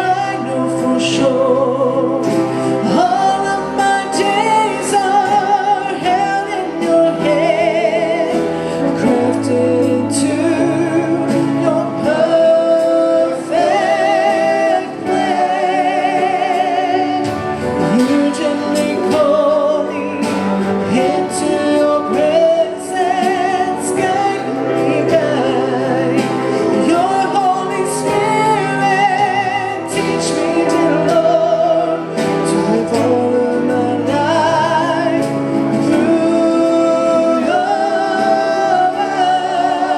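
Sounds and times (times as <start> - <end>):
band with steady beat: 0.0 - 39.9
singers with vibrato: 0.0 - 39.9.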